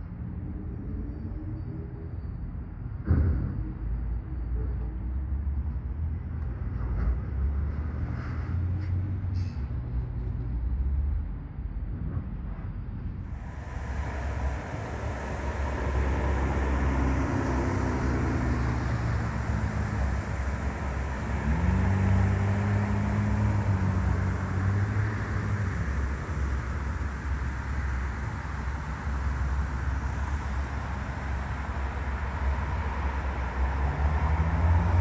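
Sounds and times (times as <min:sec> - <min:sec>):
outdoor background noise: 0:00.0 - 0:35.0
engine revving: 0:13.3 - 0:35.0.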